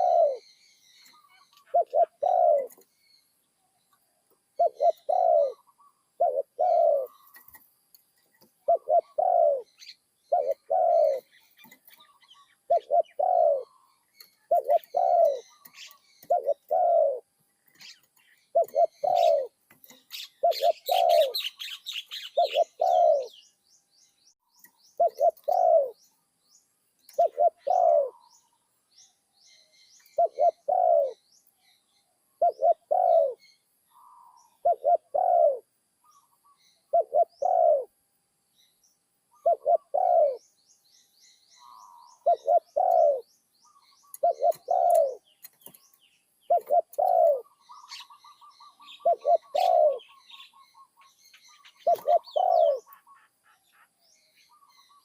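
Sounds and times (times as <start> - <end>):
dove cooing: 0.0 - 2.9, 4.4 - 7.6, 8.4 - 23.4, 25.0 - 26.0, 27.1 - 28.5, 30.1 - 31.2, 32.3 - 38.0, 39.3 - 40.5, 41.6 - 45.8, 46.5 - 53.9
small birds chirping: 0.0 - 55.0.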